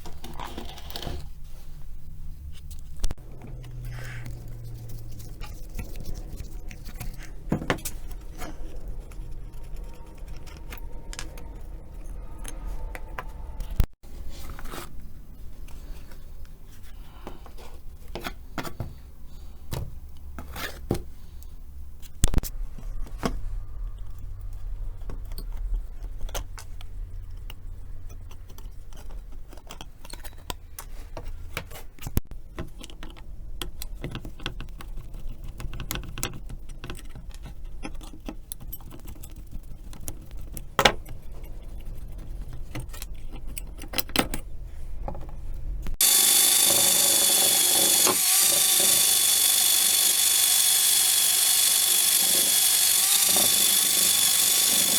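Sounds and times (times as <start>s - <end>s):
power tool whining: 46.0s - 54.9s.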